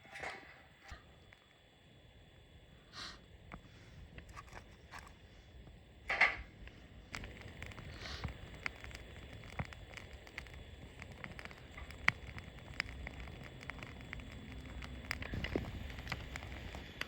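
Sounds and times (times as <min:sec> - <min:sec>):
small clicks: 0:03.4 - 0:17.0.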